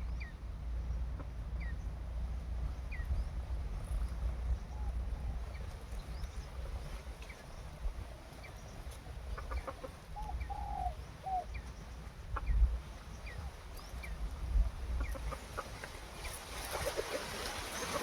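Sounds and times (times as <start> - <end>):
chicken clucking: 8.9 - 11.7, 15.0 - 16.0.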